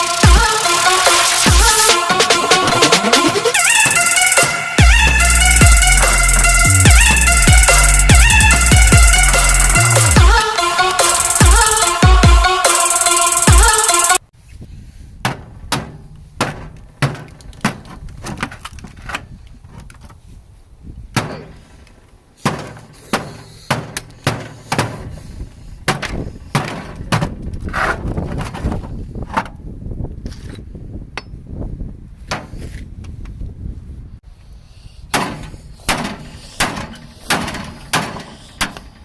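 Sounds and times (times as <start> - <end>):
hard blows smashing microwave: 22.4 - 28.8, 35.0 - 39.0.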